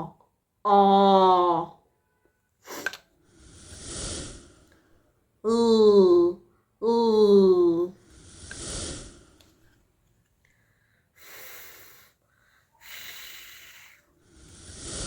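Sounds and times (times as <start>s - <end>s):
person making breathy f sound: 3.5s - 4.6s, 12.8s - 15.0s.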